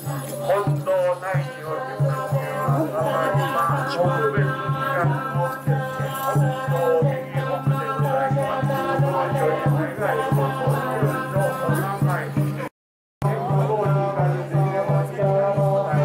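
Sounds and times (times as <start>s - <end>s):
rattling percussion: 0.0s - 16.0s
steady drum beat: 0.0s - 16.0s
group chanting: 1.8s - 12.3s.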